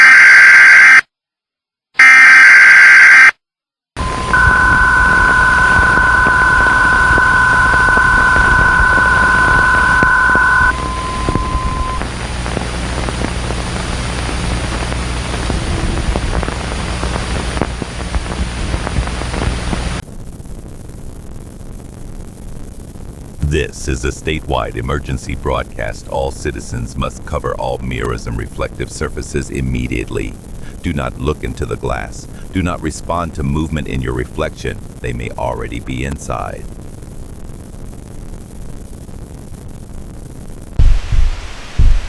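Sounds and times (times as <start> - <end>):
static: 0.0 - 1.1, 2.0 - 3.4, 4.0 - 42.0
screechy data tones: 2.0 - 3.4
low hum: 4.0 - 12.2, 23.4 - 37.0.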